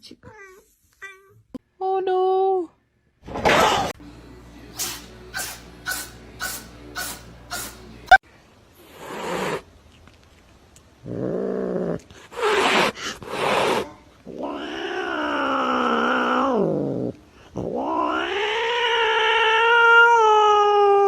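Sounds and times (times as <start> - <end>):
cat yowling: 17.8 - 21.0.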